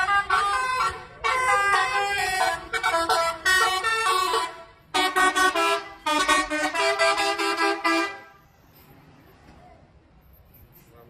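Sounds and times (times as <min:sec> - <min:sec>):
multi-note musical bus horn: 0:00.0 - 0:08.5.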